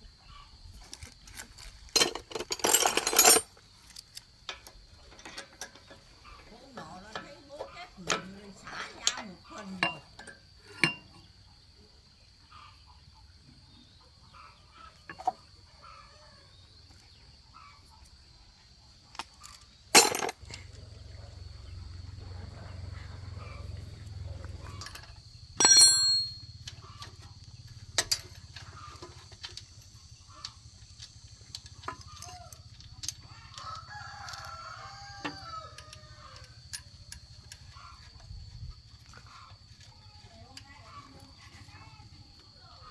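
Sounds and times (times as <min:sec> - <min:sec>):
rooster crowing: 0:33.3 - 0:36.7.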